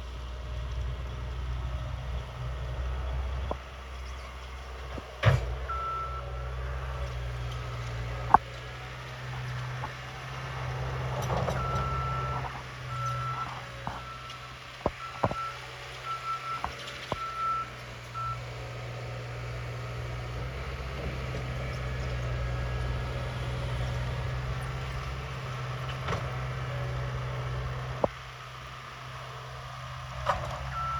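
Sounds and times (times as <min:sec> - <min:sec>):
engine hum: 0:00.0 - 0:30.9
truck reversing alarm beeping: 0:04.4 - 0:28.1, 0:30.1 - 0:30.9.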